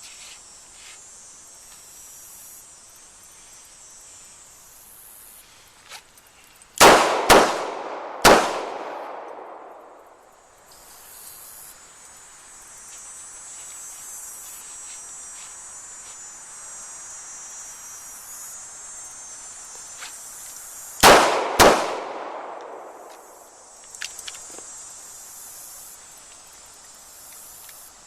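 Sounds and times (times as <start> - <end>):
high drone of insects: 0.0 - 28.0.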